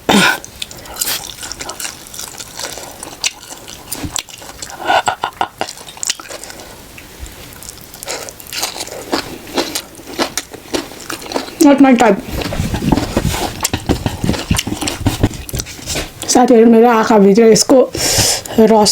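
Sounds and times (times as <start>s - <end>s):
wet mouth clicks: 0.3s - 2.2s
chewing: 0.3s - 16.4s.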